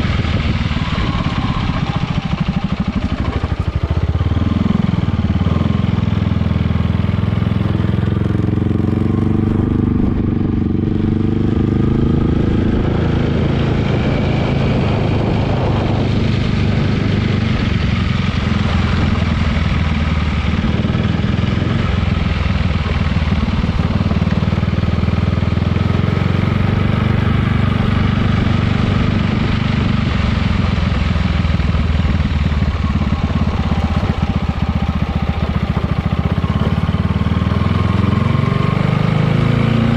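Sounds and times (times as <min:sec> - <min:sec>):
scooter engine running: 0:00.0 - 0:39.9.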